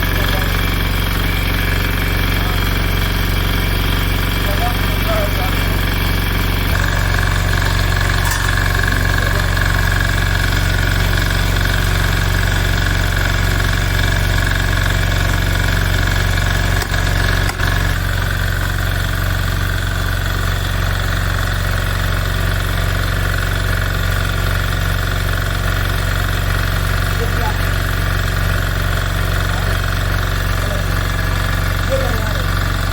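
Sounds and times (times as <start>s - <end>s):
engine humming: 0.0s - 19.8s.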